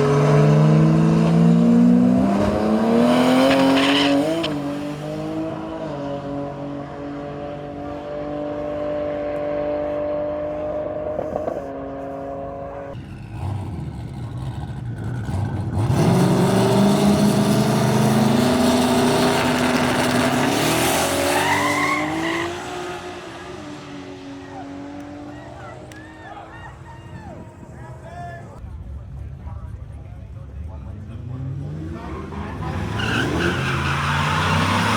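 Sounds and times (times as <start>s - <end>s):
drag car engine revving: 12.8s - 26.3s, 31.3s - 34.9s.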